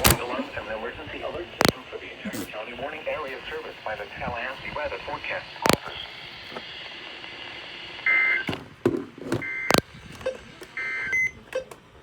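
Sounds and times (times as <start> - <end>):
sharp clicks: 1.6 - 1.8.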